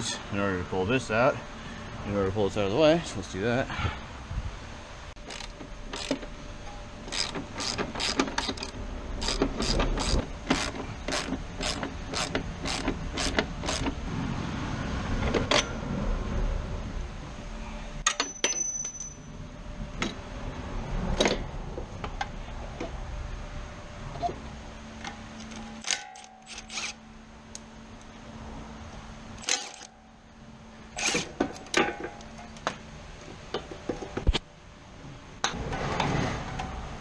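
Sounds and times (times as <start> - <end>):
ratchet wrench clicking: 5.2 - 6.2, 7.1 - 13.9, 25.5 - 27.0
metal clink with ring: 18.1 - 19.3.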